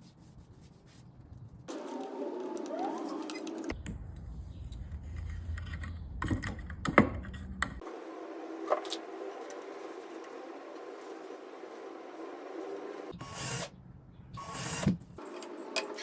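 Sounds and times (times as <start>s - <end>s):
hand tools and wood clicking: 1.7s - 7.8s.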